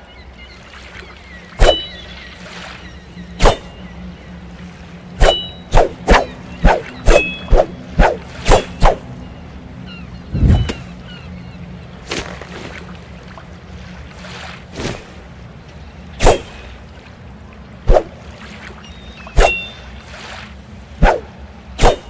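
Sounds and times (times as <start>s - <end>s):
sword swishes and clacks: 1.6s - 1.9s, 3.4s - 3.7s, 5.2s - 9.0s, 16.2s - 16.5s, 19.4s - 19.7s, 21.8s - 22.0s.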